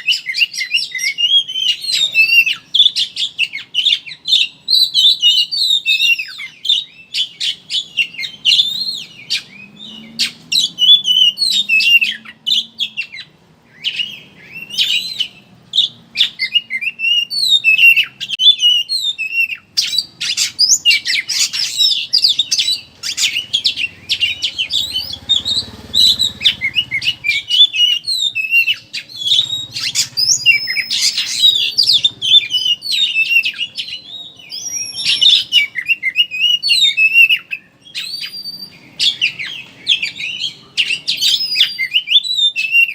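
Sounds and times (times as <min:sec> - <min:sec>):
bird singing chattering twitter: 0:00.0 - 0:42.9.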